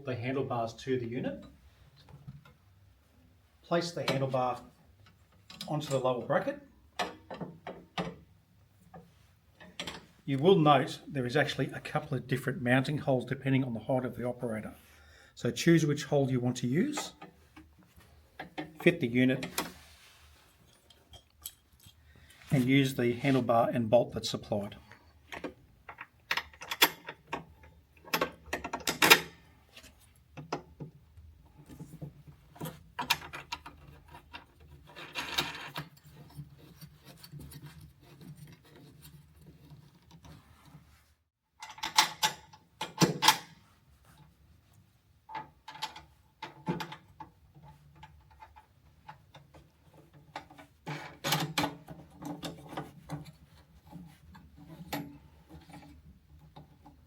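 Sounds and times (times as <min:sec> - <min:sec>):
metal clicks and rattles of tools: 0:09.6 - 0:10.2, 0:20.7 - 0:22.0, 0:25.3 - 0:29.4, 0:41.6 - 0:43.6.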